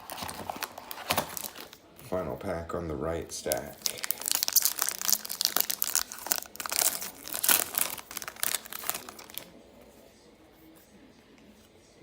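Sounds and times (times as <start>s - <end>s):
card pack wrapper crinkling: 0.0s - 1.8s, 3.5s - 9.5s.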